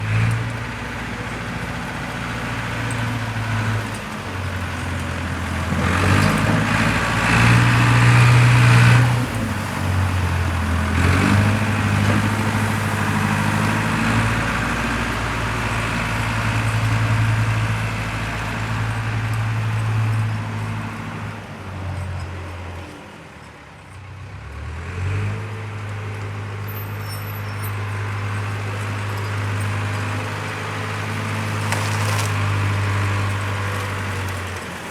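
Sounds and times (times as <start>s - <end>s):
wheel loader diesel engine revving: 0.0s - 22.0s, 27.8s - 34.9s.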